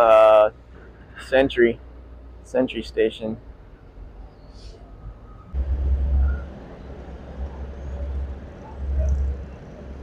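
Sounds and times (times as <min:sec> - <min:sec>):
road traffic rumble: 0:00.0 - 0:10.0.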